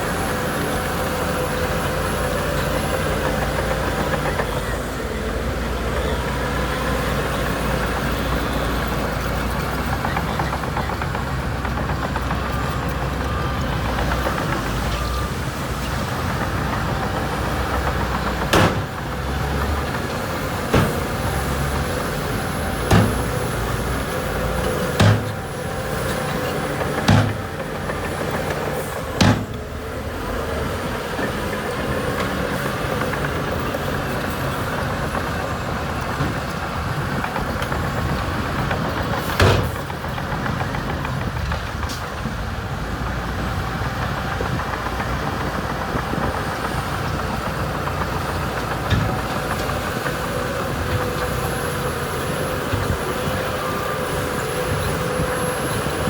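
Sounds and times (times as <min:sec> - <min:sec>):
diesel engine running: 0:00.0 - 0:56.0
sharp metallic bangs: 0:18.1 - 0:25.6, 0:26.9 - 0:27.7, 0:29.2 - 0:29.8.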